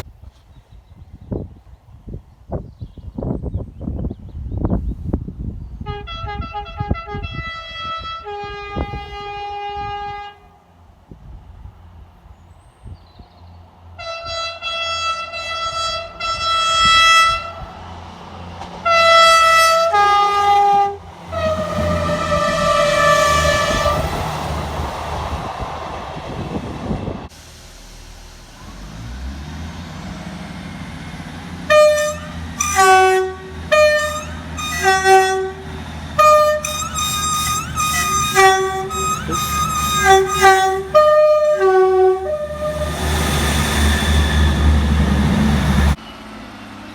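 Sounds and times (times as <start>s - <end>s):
passing train noise: 0.0s - 46.9s
train horn blasts: 5.8s - 10.8s, 14.0s - 17.7s, 18.8s - 24.6s, 31.7s - 46.0s
two-tone horn playing a tune: 18.8s - 24.3s, 31.7s - 43.3s.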